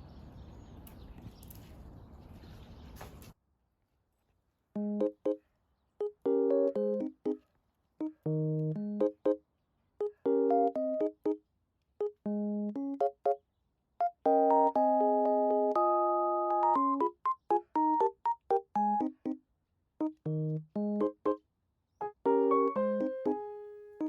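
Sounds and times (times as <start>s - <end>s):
bouncy electric piano music: 4.8s - 5.4s, 6.0s - 7.4s, 8.0s - 9.4s, 10.0s - 11.4s, 12.0s - 13.4s, 14.0s - 19.4s, 20.0s - 21.4s, 22.0s - 24.0s.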